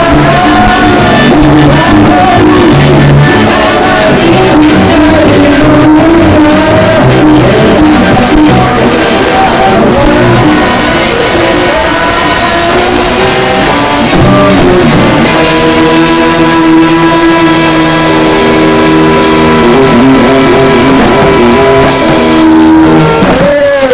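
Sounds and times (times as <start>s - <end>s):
loud rock music: 0.0s - 23.9s.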